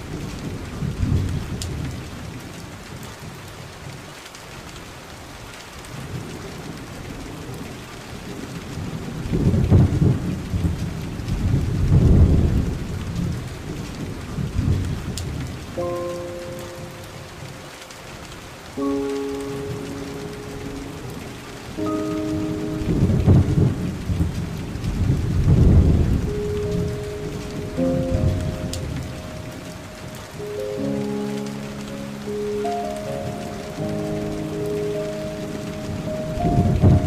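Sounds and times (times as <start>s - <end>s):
rolling thunder: 0.0s - 3.4s, 5.9s - 17.6s, 19.6s - 30.5s, 33.2s - 37.0s
rain falling: 0.0s - 37.0s.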